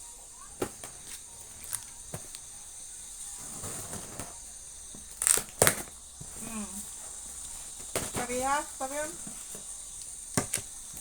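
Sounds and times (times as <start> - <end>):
steady background hiss: 0.0 - 11.0
packaging clicks and taps: 0.6 - 2.5, 9.2 - 11.0
packaging crinkling: 0.6 - 2.5, 5.0 - 6.5
sharp rustles or rips: 5.1 - 5.9.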